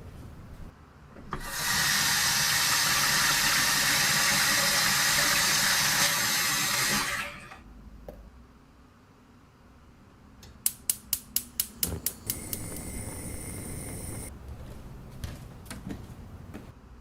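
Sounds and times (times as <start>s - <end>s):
water running from a tap: 1.4s - 7.3s.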